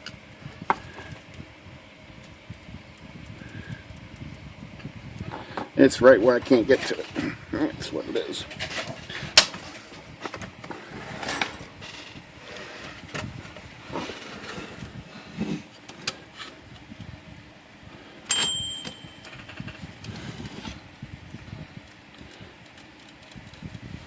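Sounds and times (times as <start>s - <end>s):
bright metallic ding: 18.3s - 19.4s.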